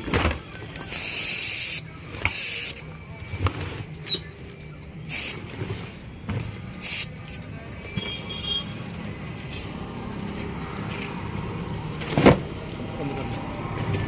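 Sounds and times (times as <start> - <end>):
compressed air hissing: 0.9 - 2.8, 5.1 - 5.4, 6.8 - 7.2.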